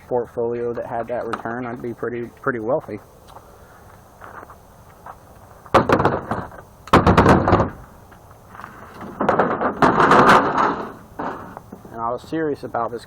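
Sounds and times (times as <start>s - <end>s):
scrap metal clattering: 8.6s - 11.8s.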